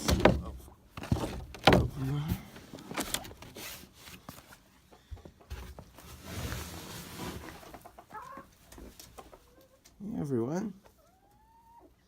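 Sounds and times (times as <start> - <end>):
knocks and thumps of someone moving: 0.0 - 4.3
faint hens clucking: 1.9 - 6.1, 7.3 - 12.0.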